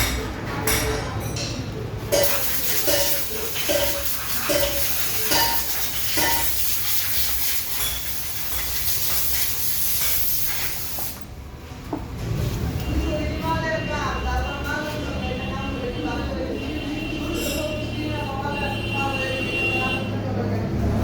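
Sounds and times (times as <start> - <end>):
metal tools clinking: 2.2 - 6.7
steady hiss: 2.2 - 11.2.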